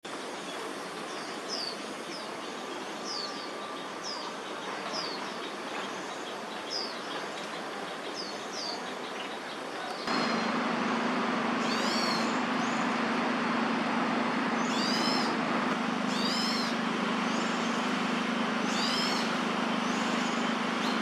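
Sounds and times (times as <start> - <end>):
city park background noise: 0.0 - 21.0
bird chirping: 14.6 - 15.4, 16.1 - 17.6, 18.7 - 19.3.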